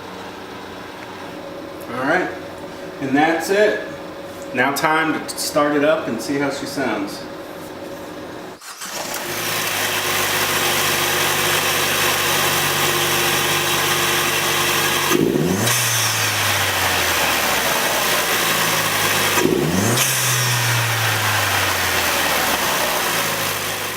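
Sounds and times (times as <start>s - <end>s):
car engine idling and revving: 8.6s - 23.9s.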